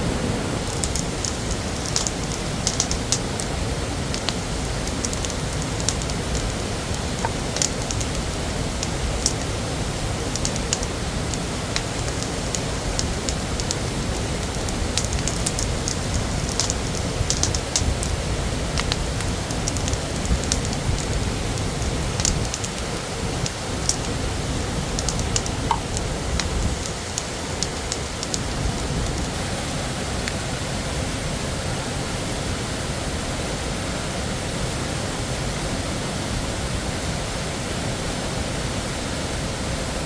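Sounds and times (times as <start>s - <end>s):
waterfall rushing: 0.0s - 40.0s
sharp irregular crackles: 0.1s - 29.5s.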